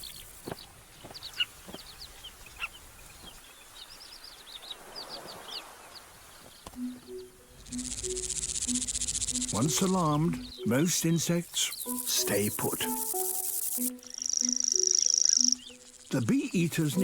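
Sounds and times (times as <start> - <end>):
birds chirping: 0.0 - 17.0
high insect trill: 6.8 - 17.0.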